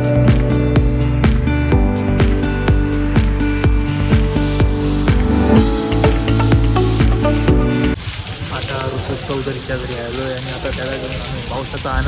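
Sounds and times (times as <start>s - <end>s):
deep bass drum hits: 0.0s - 8.0s
held music notes: 0.0s - 8.0s.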